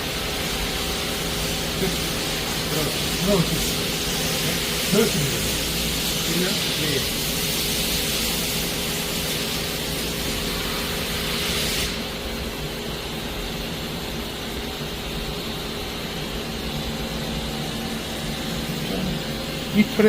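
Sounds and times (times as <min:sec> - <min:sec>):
lathe humming with tones: 0:00.0 - 0:11.2, 0:11.9 - 0:20.0
loud air hiss: 0:00.0 - 0:12.4.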